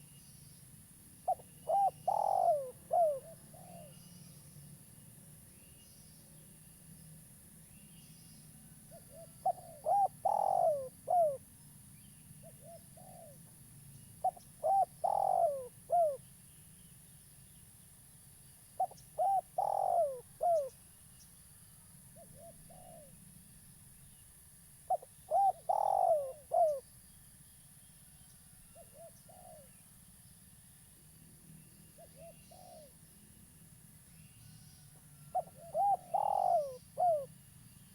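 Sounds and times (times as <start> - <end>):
dove cooing: 1.3 - 4.0, 8.9 - 11.4, 12.4 - 13.4, 14.2 - 16.2, 18.8 - 20.8, 22.2 - 23.2, 24.9 - 26.8, 28.8 - 29.7, 32.0 - 33.0, 35.3 - 37.3.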